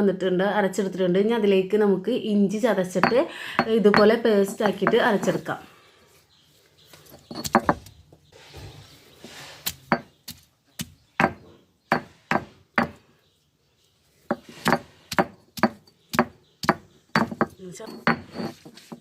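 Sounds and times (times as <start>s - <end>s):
stone roller knocking on grinding stone: 3.0s - 5.5s, 7.3s - 7.9s, 14.3s - 19.0s.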